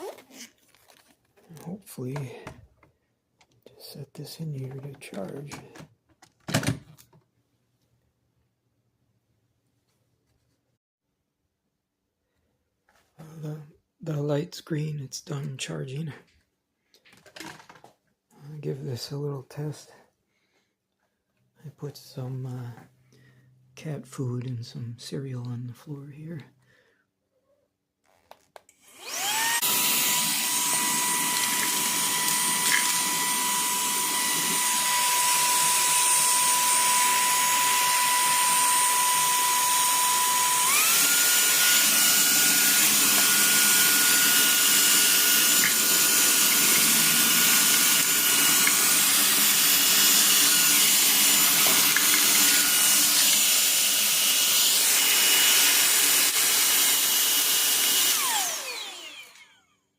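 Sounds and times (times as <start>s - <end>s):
handheld vacuum whining: 0.0s - 0.6s, 4.6s - 5.8s, 28.1s - 59.9s.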